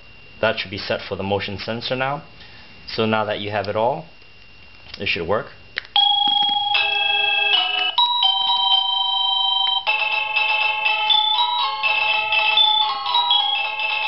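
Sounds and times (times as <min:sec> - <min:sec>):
electronic doorbell chime melodies: 0:06.0 - 0:14.0.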